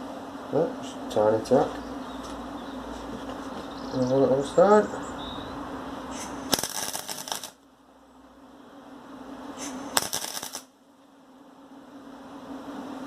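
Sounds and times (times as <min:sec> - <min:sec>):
arc welder crackling: 0:06.2 - 0:07.7, 0:09.6 - 0:10.8.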